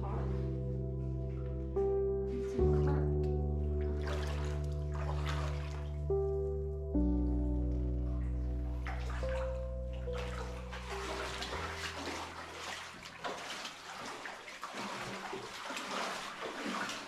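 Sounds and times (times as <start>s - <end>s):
background music of held notes: 0.0s - 13.2s
water splashing and sloshing: 0.0s - 17.0s.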